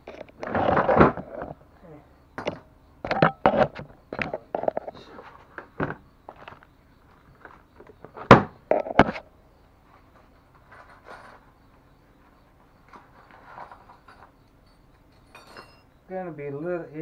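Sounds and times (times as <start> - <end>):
tools clinking and knocking: 2.4 - 5.0, 12.8 - 16.0.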